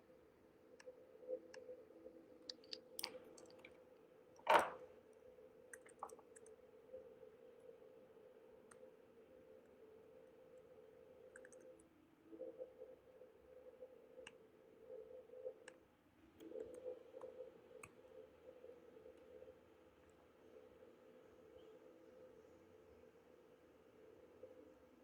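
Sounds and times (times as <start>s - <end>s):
faint steady hum: 0.0s - 25.0s
light clicks and taps: 11.3s - 11.9s.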